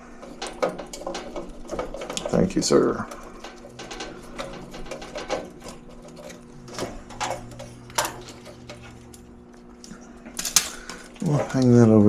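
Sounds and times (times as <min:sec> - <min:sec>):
low steady hum: 0:00.0 - 0:12.0
hands handling wiring clicks: 0:03.1 - 0:11.8.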